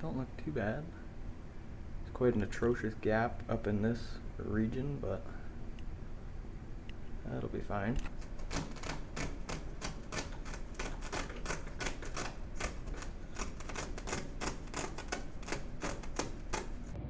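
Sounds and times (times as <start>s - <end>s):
hammer tapping nails: 8.2s - 17.0s.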